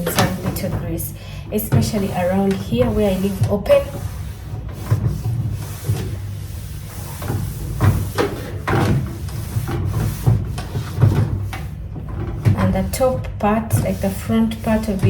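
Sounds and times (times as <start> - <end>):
cloth rubbing on microwave: 0.0 - 15.0.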